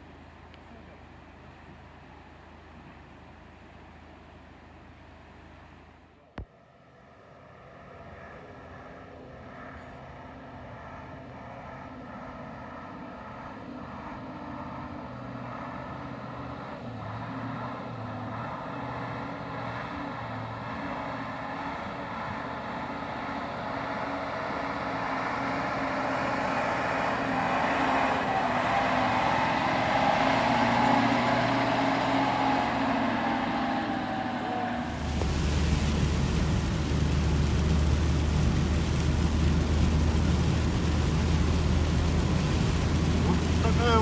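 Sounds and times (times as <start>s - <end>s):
vehicle engine hum: 26.9s - 44.0s
road noise: 34.4s - 44.0s.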